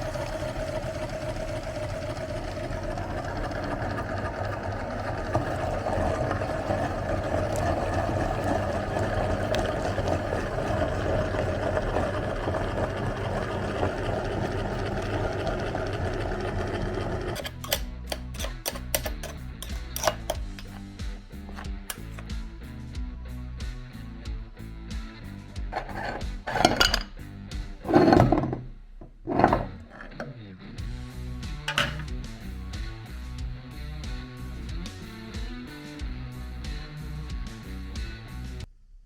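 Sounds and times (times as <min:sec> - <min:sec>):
electric meat grinder running: 0:00.0 - 0:20.8.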